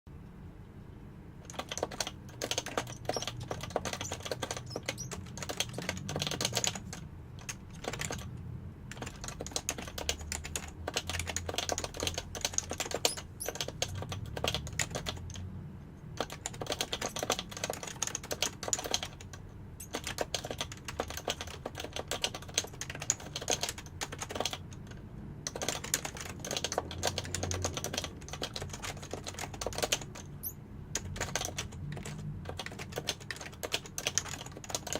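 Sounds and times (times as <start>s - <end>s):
fast typing on keyboard: 1.4s - 15.5s, 16.1s - 34.9s.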